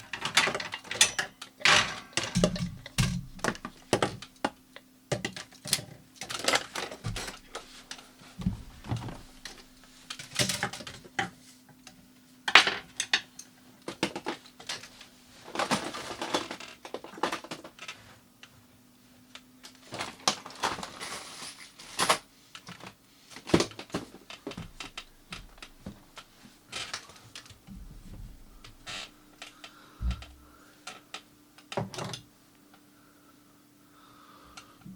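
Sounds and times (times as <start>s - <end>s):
faint steady hum: 0.0s - 34.9s
tapping and rattling: 0.1s - 5.4s.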